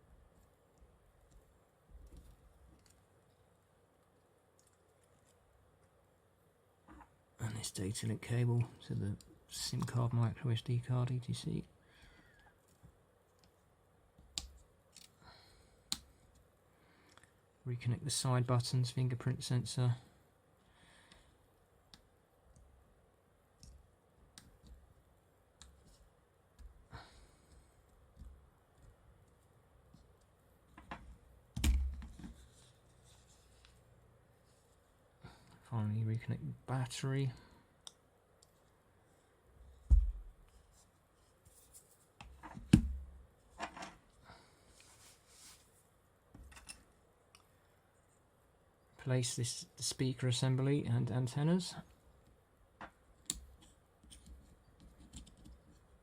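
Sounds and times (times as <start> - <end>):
small clicks and taps of tools: 25.6 - 26.8
sharp knock and thud: 39.9 - 40.2.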